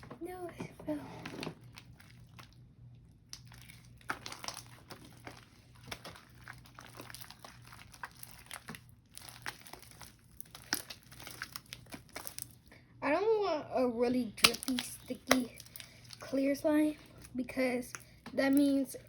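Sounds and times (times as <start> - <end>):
sticky slime clicks and crackles: 3.2 - 12.6, 14.4 - 16.4.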